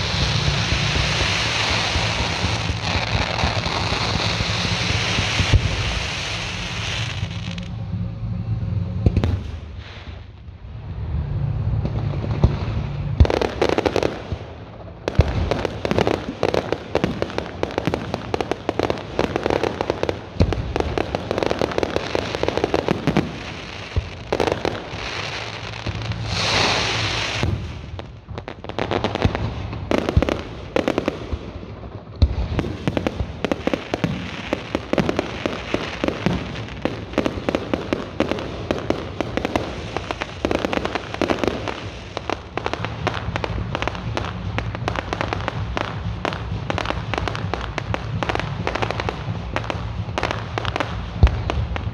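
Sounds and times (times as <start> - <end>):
fireworks hissing burst: 0.0 - 7.8, 9.0 - 10.3, 11.8 - 28.0
fireworks crackling and popping: 0.0 - 8.0, 9.0 - 51.9
fireworks bangs: 0.0 - 51.9.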